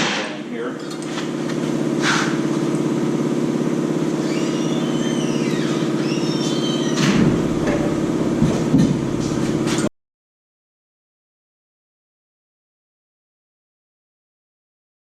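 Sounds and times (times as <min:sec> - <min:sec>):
truck engine idling: 0:01.6 - 0:09.8
squeaky rubbing: 0:04.2 - 0:07.0.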